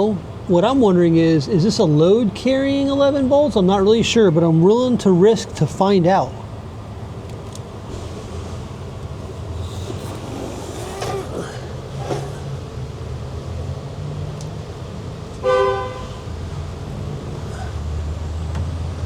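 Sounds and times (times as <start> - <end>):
vehicle horn toot: 15.4 - 16.2.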